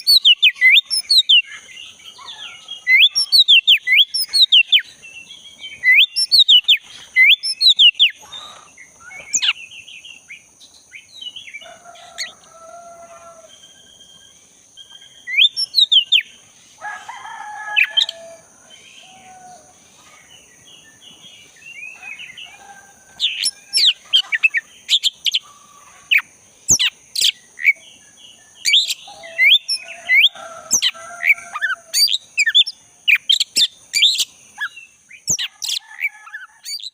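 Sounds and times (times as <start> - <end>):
bird singing whistled notes: 0.0 - 11.6, 13.6 - 16.3, 26.7 - 31.4
lower warbled bird calls: 0.0 - 16.3, 21.7 - 27.8.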